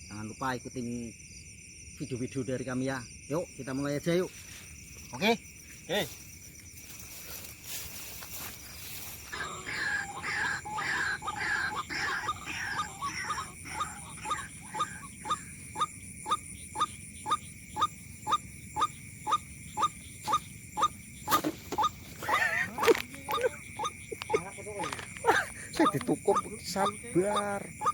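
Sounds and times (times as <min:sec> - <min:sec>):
waterhen calling: 0:08.9 - 0:27.9.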